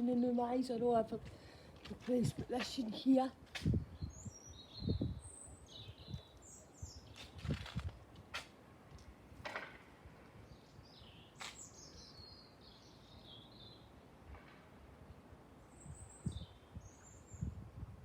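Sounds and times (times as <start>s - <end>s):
small birds chirping: 3.7s - 7.6s, 10.4s - 14.0s, 15.6s - 17.6s.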